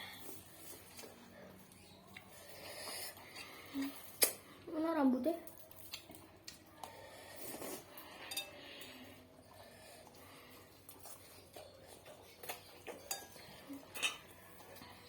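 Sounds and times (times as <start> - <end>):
utensils clinking against bowl: 8.0 - 9.0, 12.5 - 14.3.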